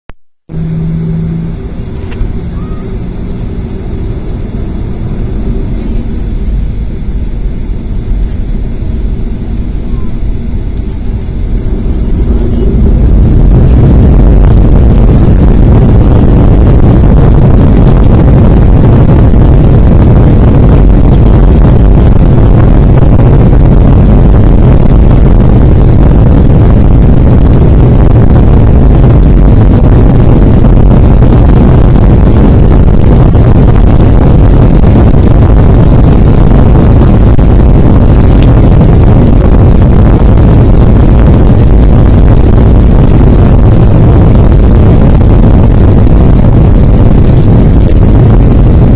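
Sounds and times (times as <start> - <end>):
jet engine rumble in cabin: 0.4 - 48.9.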